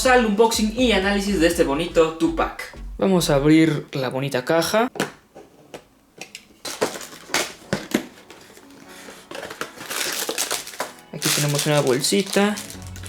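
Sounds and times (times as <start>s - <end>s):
contents scraping out of box: 6.4s - 13.0s.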